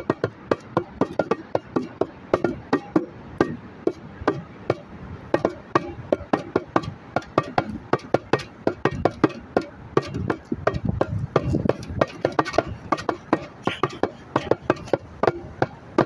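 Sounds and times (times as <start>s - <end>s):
bongo drums played by hand: 0.0s - 4.8s, 5.4s - 16.0s.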